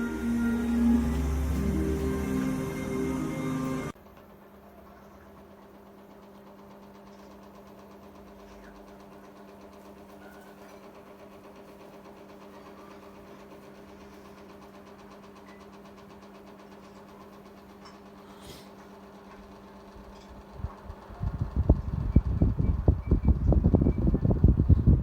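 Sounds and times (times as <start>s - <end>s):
pedestal fan running: 0.0s - 4.0s, 18.4s - 25.0s.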